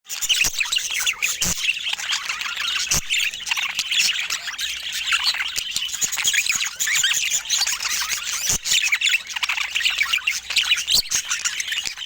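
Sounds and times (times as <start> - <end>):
budgerigars chattering: 0.1 - 12.0.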